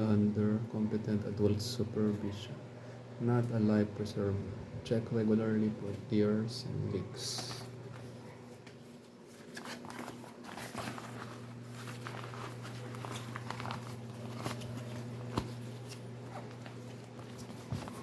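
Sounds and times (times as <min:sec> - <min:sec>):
steady low hum: 0:00.0 - 0:18.0
plastic packaging crinkling: 0:08.7 - 0:18.0.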